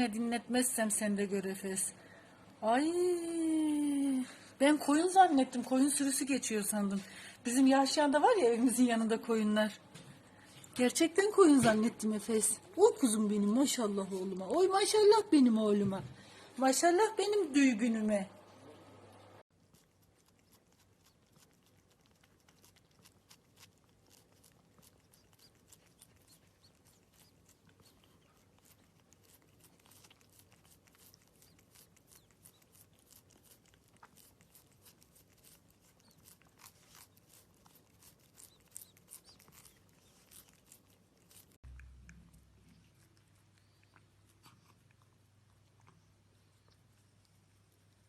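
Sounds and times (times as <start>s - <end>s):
cat chewing food: 19.5s - 48.0s.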